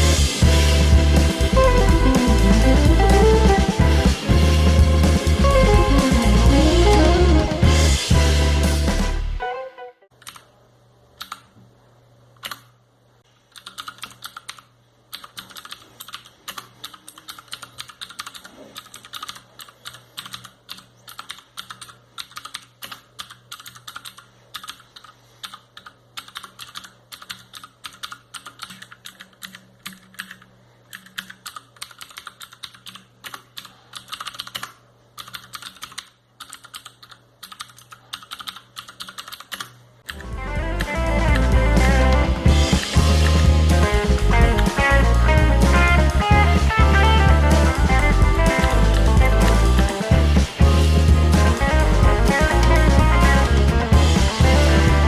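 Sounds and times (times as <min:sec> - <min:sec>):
mechanical keyboard clicks: 0:10.2 - 0:10.5, 0:11.2 - 0:11.6, 0:12.4 - 0:12.7, 0:13.5 - 0:40.2.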